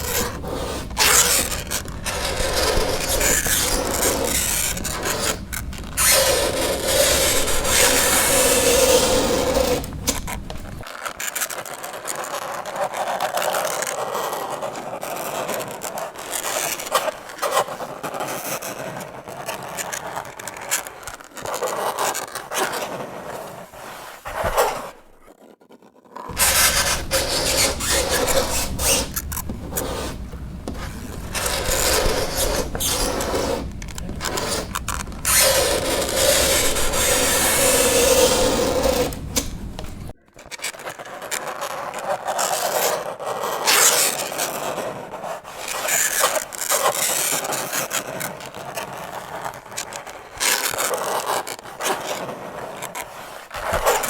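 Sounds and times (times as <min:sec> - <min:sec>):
fingernails scraping chalkboard: 0:00.0 - 0:10.9, 0:12.0 - 0:54.0.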